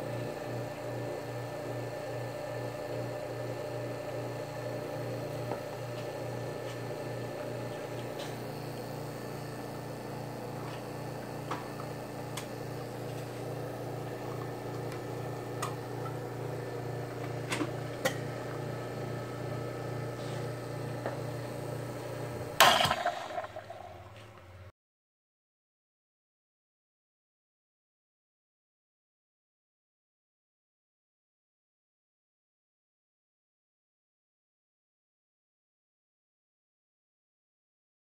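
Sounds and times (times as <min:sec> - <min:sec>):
espresso machine humming: 0:00.0 - 0:24.5.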